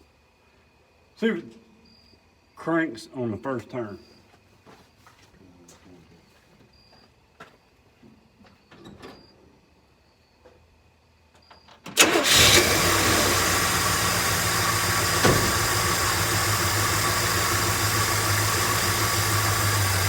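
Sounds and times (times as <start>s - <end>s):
truck engine starting and idling: 11.9s - 20.0s.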